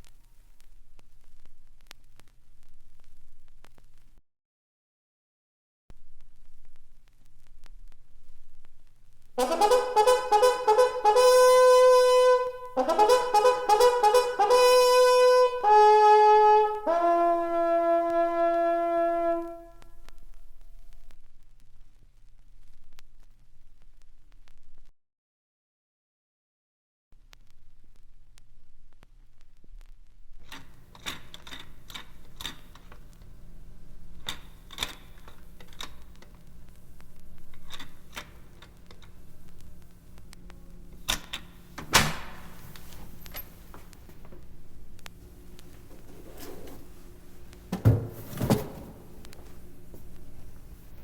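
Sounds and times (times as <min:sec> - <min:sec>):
solo brass horn call: 0:09.4 - 0:20.2
low machine hum: 0:31.8 - 0:51.0.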